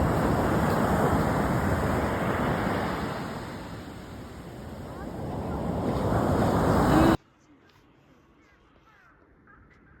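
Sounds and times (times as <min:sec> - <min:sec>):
sea waves washing ashore: 0:00.0 - 0:07.2
wind rumbling on microphone: 0:00.0 - 0:07.2.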